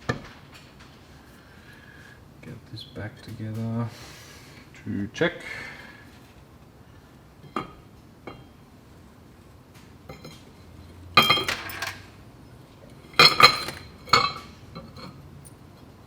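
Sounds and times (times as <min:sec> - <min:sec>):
metal clutch parts clattering: 0:10.1 - 0:15.8.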